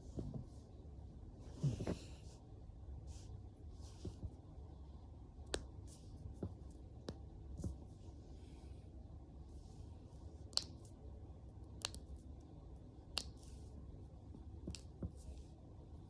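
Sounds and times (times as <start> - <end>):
knuckles cracking: 10.5 - 11.0, 11.8 - 12.2, 13.2 - 13.5, 14.6 - 15.1.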